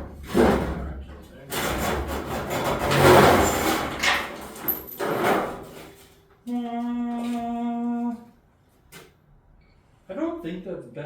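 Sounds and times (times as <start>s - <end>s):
scraping of truck body parts: 0.0s - 6.2s.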